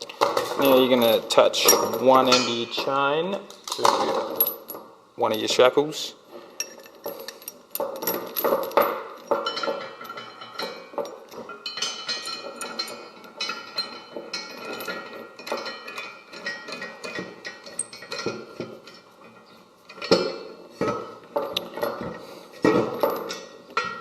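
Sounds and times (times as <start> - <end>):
chain links clinking: 6.6 - 19.1.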